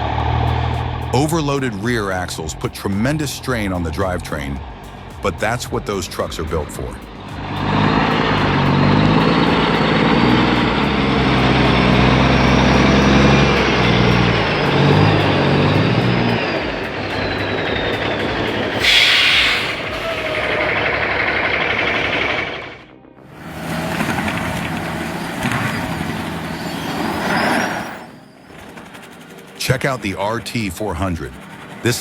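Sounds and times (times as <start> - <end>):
truck diesel engine labouring: 0.0 - 32.0
air brake hiss: 18.7 - 20.8.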